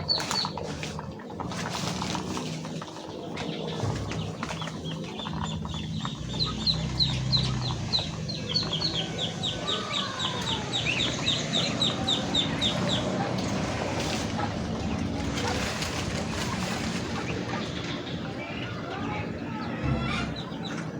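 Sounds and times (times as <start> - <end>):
songbird chirping: 0.0 - 20.9.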